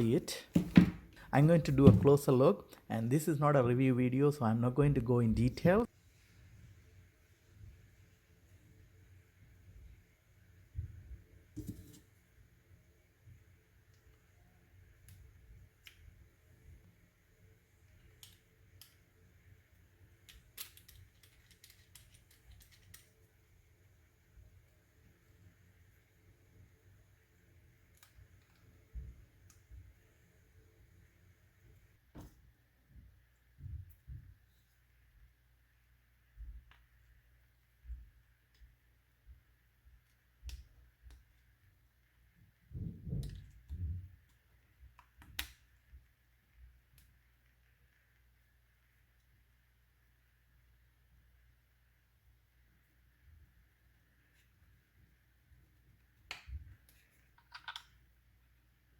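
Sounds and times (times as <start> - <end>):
room hum: 0.0 - 58.9
small objects clicking: 20.2 - 23.2, 56.3 - 58.0.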